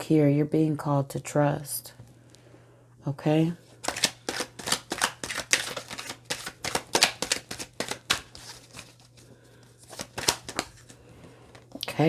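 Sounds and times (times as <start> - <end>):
cards being shuffled: 3.8 - 11.7.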